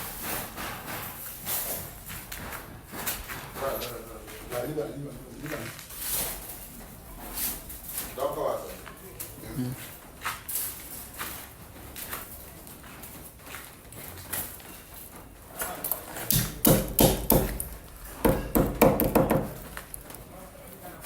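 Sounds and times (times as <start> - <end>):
heavy knocks and thumps: 16.3 - 20.2.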